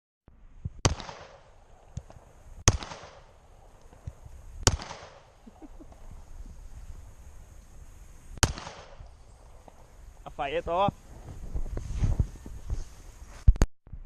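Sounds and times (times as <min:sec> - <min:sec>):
handgun shots: 0:00.8 - 0:01.4, 0:02.7 - 0:03.3, 0:04.7 - 0:05.3, 0:08.4 - 0:09.0.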